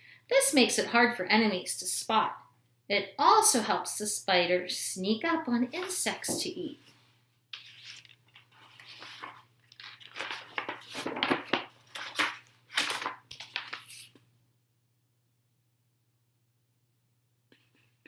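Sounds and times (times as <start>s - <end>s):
paper pages rustling: 5.8s - 6.2s, 7.6s - 14.2s.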